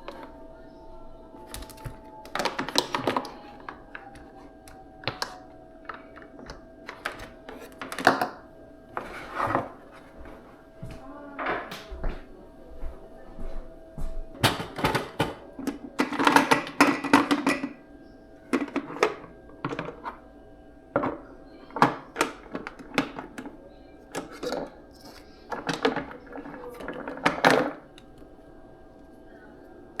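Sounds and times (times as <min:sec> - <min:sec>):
faint steady hum: 0:00.0 - 0:30.0
household objects clattering: 0:14.4 - 0:17.8, 0:18.5 - 0:28.4.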